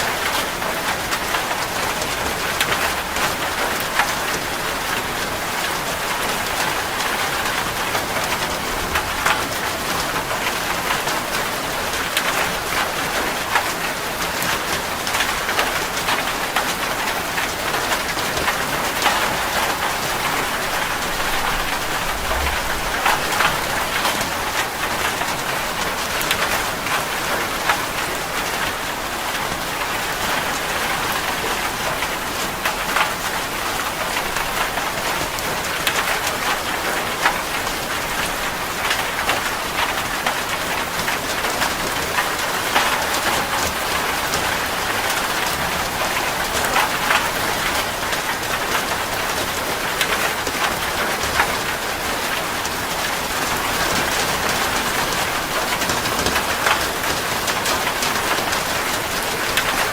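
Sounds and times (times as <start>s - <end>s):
steady rain with drop hits: 0.0s - 59.9s.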